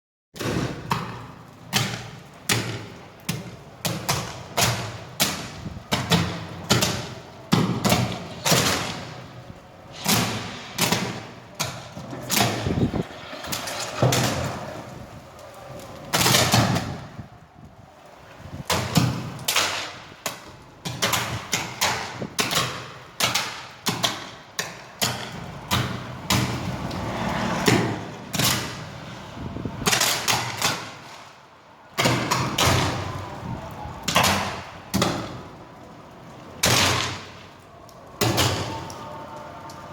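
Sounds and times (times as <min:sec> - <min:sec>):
electric arcing bangs: 0:00.4 - 0:15.4.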